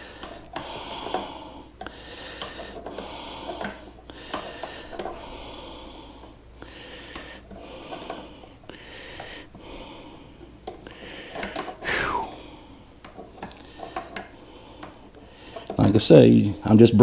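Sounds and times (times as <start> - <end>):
man breathing hard: 0.0 - 12.8.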